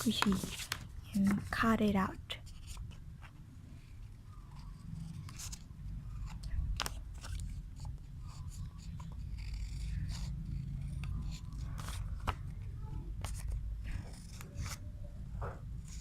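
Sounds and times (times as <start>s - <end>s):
paper rustling and crinkling: 0.0s - 1.7s.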